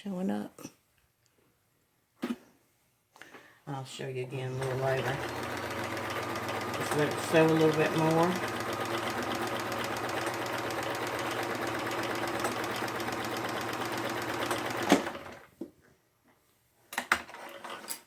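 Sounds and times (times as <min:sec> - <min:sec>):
sewing machine stitching: 0:04.5 - 0:15.5, 0:17.2 - 0:18.0.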